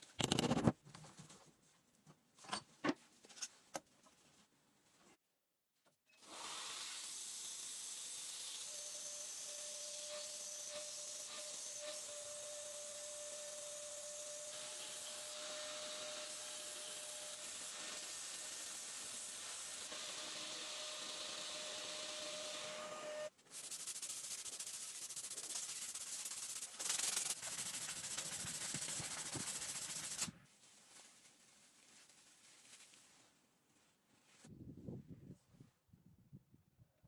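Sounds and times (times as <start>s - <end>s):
power sander on steel blade: 8.1s - 23.3s
pulsing coarse sanding: 23.5s - 30.3s.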